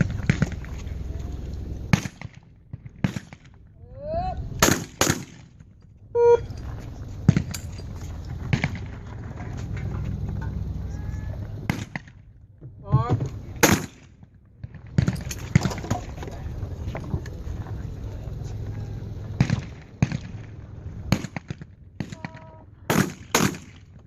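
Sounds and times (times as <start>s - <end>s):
steady low hum: 0.0s - 24.0s
shotgun shots: 1.9s - 3.6s, 4.6s - 5.6s, 11.6s - 12.2s, 13.6s - 16.1s, 19.4s - 24.0s
person shouting a call: 3.8s - 4.5s, 6.2s - 6.5s, 22.1s - 22.8s.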